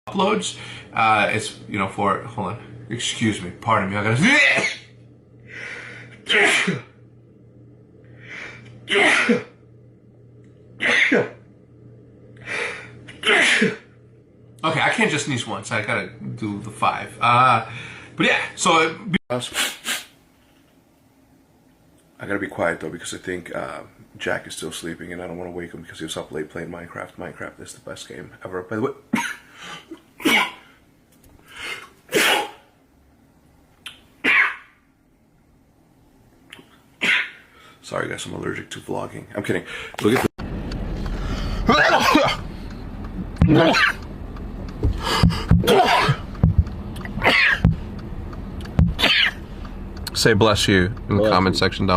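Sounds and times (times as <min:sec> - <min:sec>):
man sneezing: 0:04.2 - 0:04.9, 0:06.2 - 0:06.9, 0:08.9 - 0:09.6, 0:10.8 - 0:11.4, 0:13.1 - 0:13.8, 0:30.2 - 0:30.7, 0:32.1 - 0:32.7, 0:34.2 - 0:34.7, 0:37.0 - 0:37.5, 0:41.6 - 0:42.5, 0:45.6 - 0:46.2, 0:47.2 - 0:47.6
drawn-in breath: 0:05.4 - 0:06.2, 0:08.1 - 0:08.7.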